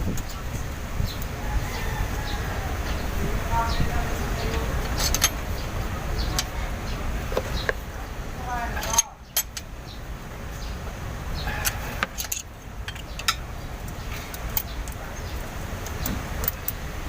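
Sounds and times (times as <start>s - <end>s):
low steady rumble: 0.0s - 17.0s
hand tools clicking on metal: 4.5s - 5.5s, 8.8s - 9.7s, 11.6s - 16.8s.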